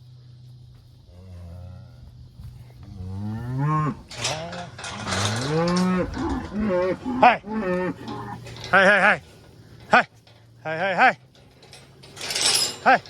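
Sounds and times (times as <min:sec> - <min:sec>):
cattle mooing: 0:02.8 - 0:11.2.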